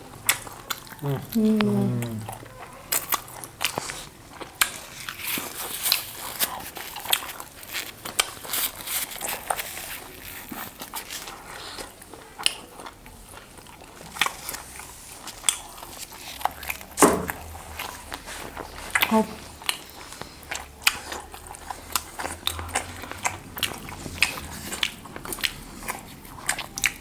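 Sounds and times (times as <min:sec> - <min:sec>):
crunchy bites and wet chewing: 0:00.1 - 0:27.0.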